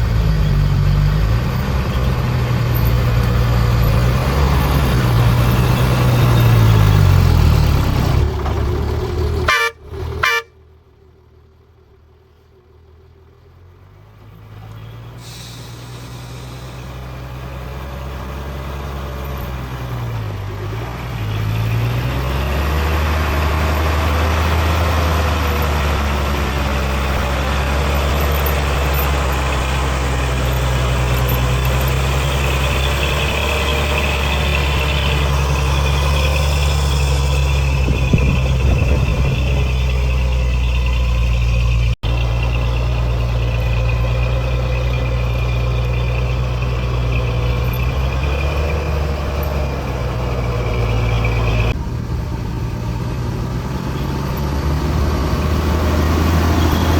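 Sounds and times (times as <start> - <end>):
truck diesel engine running: 0.0 - 56.9
truck horn toots: 9.3 - 10.6.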